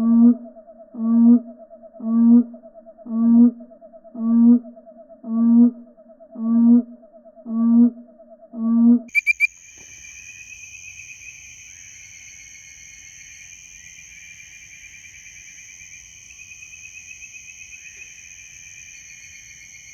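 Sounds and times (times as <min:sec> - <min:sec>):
insects chorus droning and trilling: 0:09.1 - 0:19.9.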